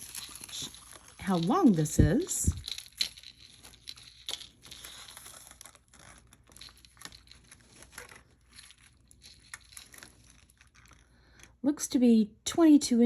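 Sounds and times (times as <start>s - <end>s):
necklace rustling and clicking: 0.0s - 11.6s.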